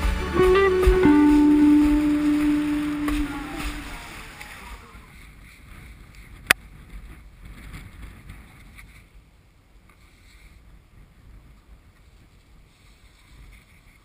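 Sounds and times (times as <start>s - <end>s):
wind gusting over microphone: 3.4s - 9.5s.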